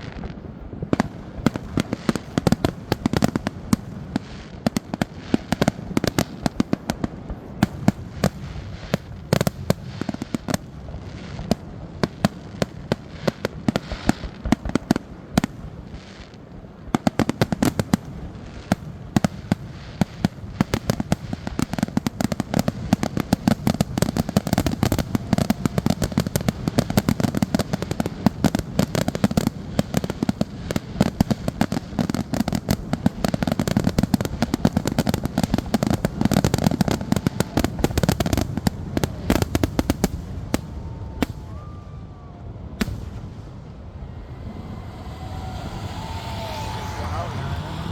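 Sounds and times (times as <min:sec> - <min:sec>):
fireworks bangs and crackles: 0:00.0 - 0:47.9
single firework booms: 0:16.9 - 0:45.9.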